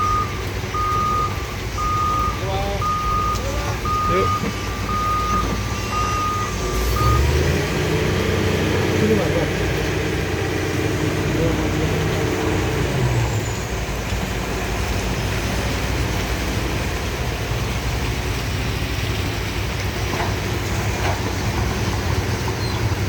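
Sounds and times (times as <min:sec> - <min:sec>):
truck diesel engine running: 0:00.0 - 0:23.0.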